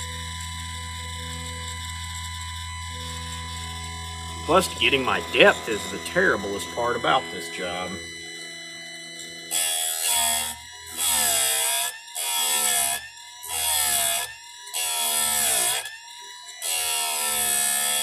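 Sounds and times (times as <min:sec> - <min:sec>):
chain sharpener grinding: 0:07.6 - 0:15.9.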